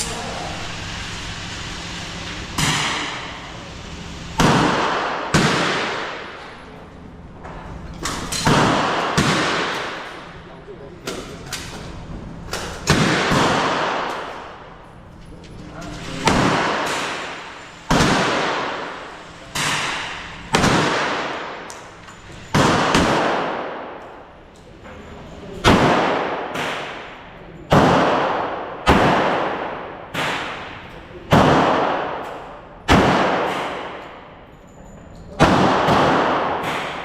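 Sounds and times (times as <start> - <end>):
echoing gunshots: 2.5 - 3.6, 4.4 - 6.4, 8.2 - 10.2, 12.8 - 14.6, 16.2 - 24.2, 25.6 - 34.1, 35.4 - 37.0.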